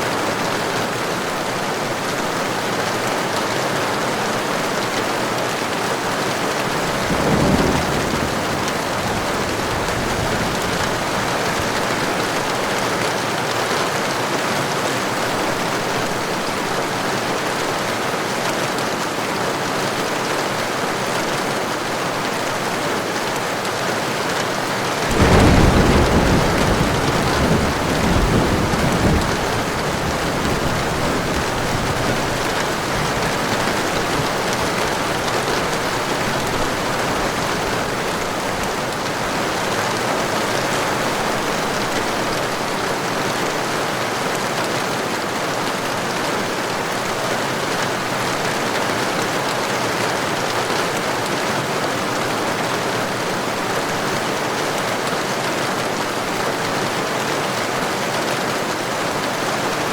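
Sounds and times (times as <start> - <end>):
heavy rain falling: 0.0 - 59.9
thunder rumbling: 6.5 - 12.8, 25.0 - 42.2.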